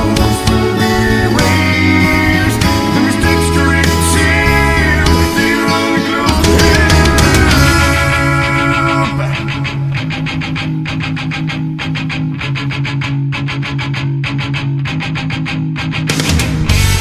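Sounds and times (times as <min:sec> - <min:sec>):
rock music with electric guitar: 0:00.0 - 0:17.0.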